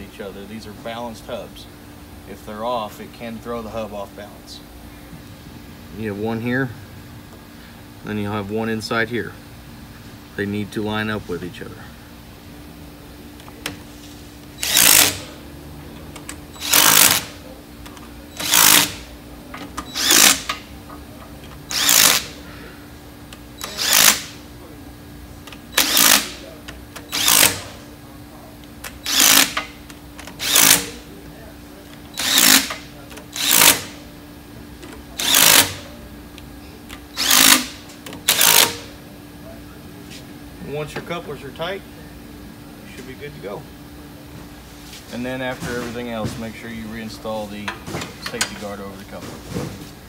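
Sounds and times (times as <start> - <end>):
power driver bursts: 14.6 - 15.3, 16.5 - 17.4, 18.4 - 19.1, 19.8 - 20.6, 21.7 - 22.4, 23.6 - 24.4, 25.6 - 26.4, 27.0 - 27.8, 28.9 - 31.0, 32.1 - 34.0, 35.2 - 35.8, 37.1 - 38.9.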